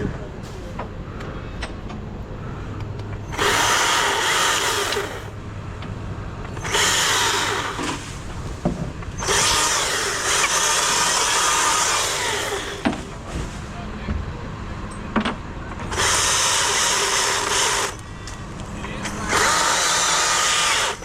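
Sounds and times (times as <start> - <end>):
chainsaw cutting wood: 3.3 - 5.3, 6.6 - 8.1, 9.2 - 13.1, 15.9 - 18.0, 19.0 - 21.0.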